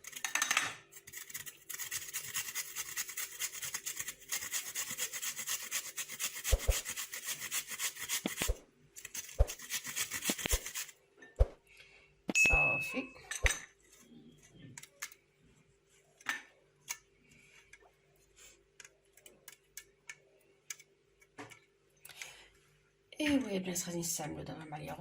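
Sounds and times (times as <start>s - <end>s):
ginger grated on a grater: 0.9s - 11.0s.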